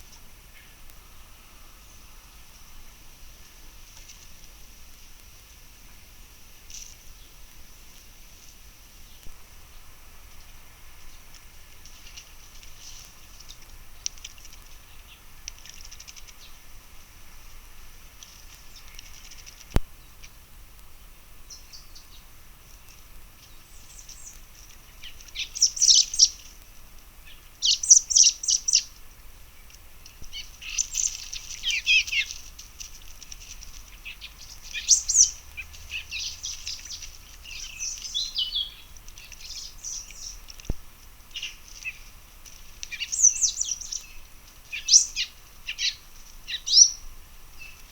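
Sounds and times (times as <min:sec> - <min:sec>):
small birds chirping: 0:21.4 - 0:47.9.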